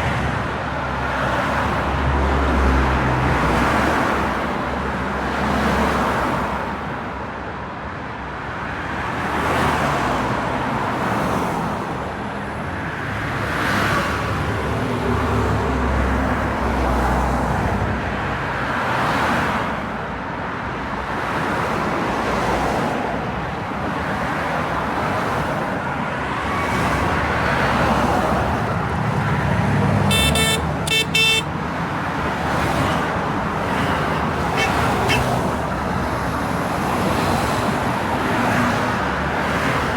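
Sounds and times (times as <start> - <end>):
cars passing on road: 0.0 - 39.9
car horn honking: 30.1 - 31.5, 34.1 - 35.5.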